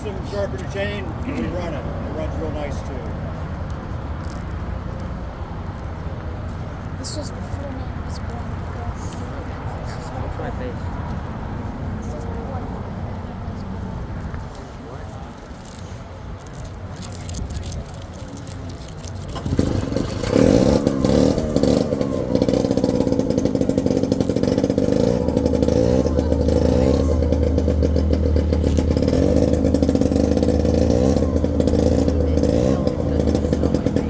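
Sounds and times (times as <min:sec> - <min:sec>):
chainsaw running: 0:17.9 - 0:34.0.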